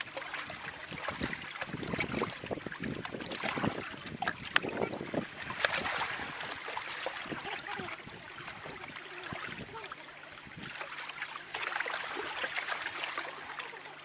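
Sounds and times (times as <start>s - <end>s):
wind on microphone: 0.0s - 10.8s
water lapping and splashing: 0.0s - 14.0s.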